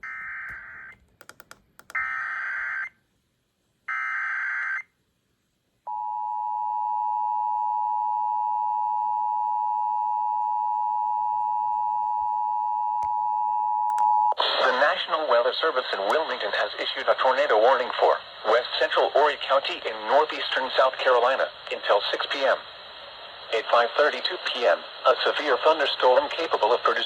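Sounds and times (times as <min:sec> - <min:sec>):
clicks: 0:00.5 - 0:02.0, 0:13.9 - 0:14.1.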